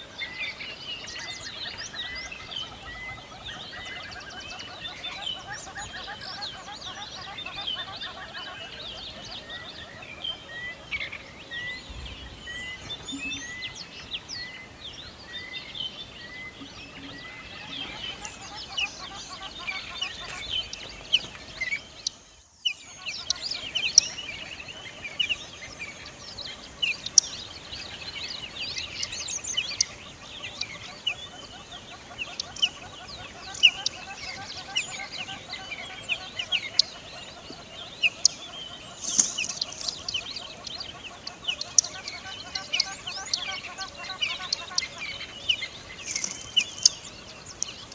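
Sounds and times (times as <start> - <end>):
songbirds chirping and trilling: 0.0 - 47.9.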